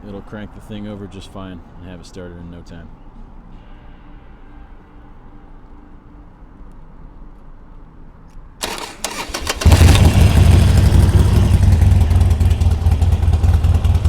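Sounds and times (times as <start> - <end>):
starter motor cranking: 8.6 - 13.8
motorcycle engine running loud: 8.6 - 14.0.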